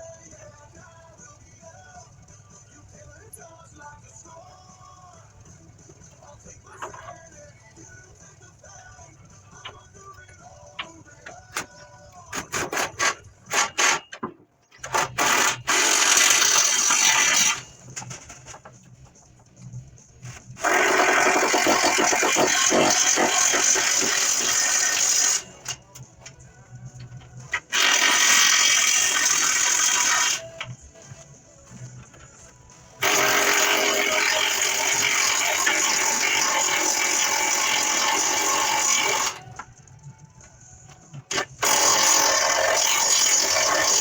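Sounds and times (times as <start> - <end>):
power tool running: 14.8 - 18.6, 20.6 - 25.9, 27.5 - 30.7, 33.0 - 39.6, 41.3 - 44.0.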